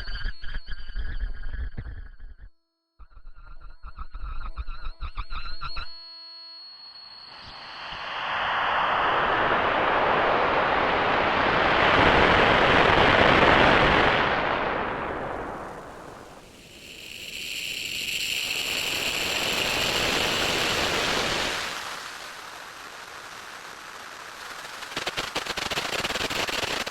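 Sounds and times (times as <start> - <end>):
bright steady ringing tone: 3.1 - 8.0
dense noisy synth wash: 7.6 - 26.9.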